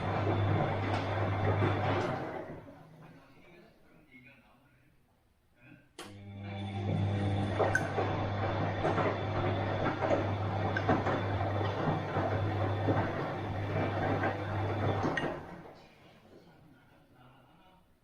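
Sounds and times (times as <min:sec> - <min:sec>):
laundry and water swishing: 0:00.0 - 0:02.8, 0:06.5 - 0:16.4
washing machine motor hum: 0:00.0 - 0:03.3, 0:06.0 - 0:16.6.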